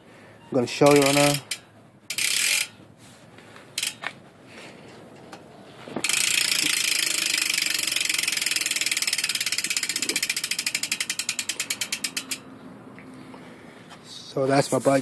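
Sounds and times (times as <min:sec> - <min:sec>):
bicycle hub ratcheting clicks: 0:00.7 - 0:02.8, 0:03.7 - 0:04.2, 0:05.2 - 0:12.5.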